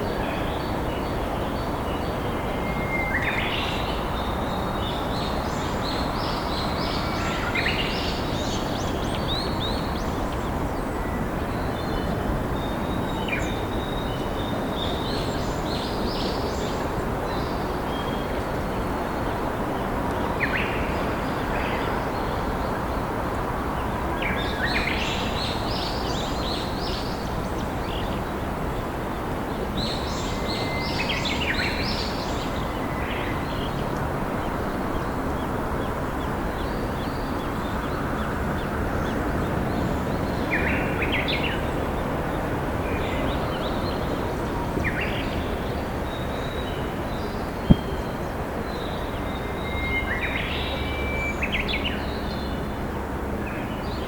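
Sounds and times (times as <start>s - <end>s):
songbirds singing: 23.8s - 54.0s.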